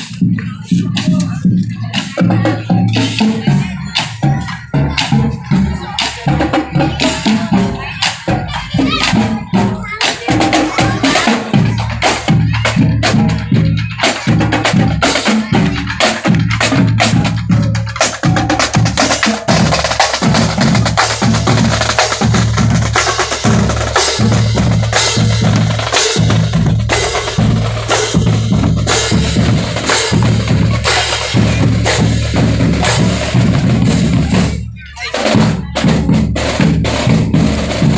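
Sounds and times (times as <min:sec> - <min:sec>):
marching drumline: 0:00.0 - 0:37.9.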